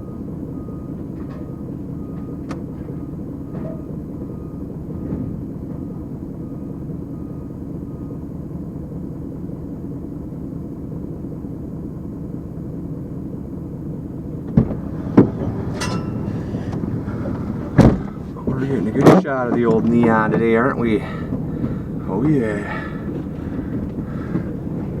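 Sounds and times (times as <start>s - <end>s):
diesel engine rumbling: 0.0s - 25.0s
sharp metal bangs: 14.6s - 18.9s
metal clatter: 14.6s - 19.2s.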